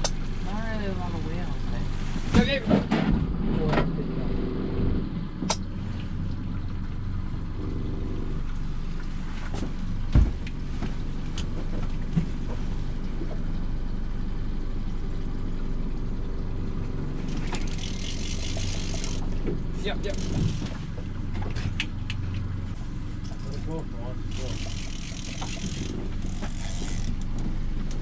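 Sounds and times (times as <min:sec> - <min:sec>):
boat engine humming: 0:00.0 - 0:28.0
knocks on boat: 0:10.1 - 0:10.5.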